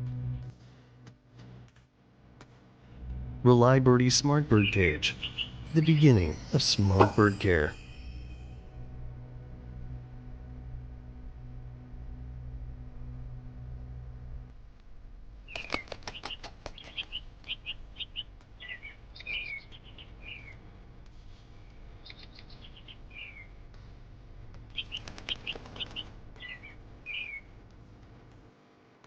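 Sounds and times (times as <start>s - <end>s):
pet birds chirping: 4.5s - 7.4s, 15.5s - 20.6s, 22.0s - 23.5s, 24.7s - 27.5s.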